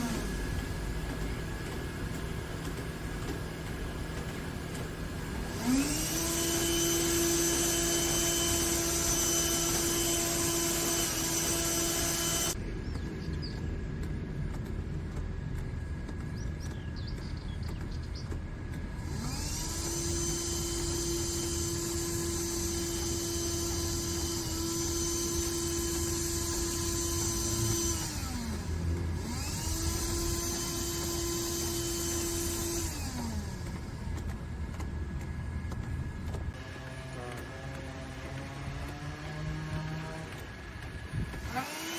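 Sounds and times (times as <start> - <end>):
low mechanical hum: 0.0 - 41.9
vacuum motor whining: 0.0 - 41.9.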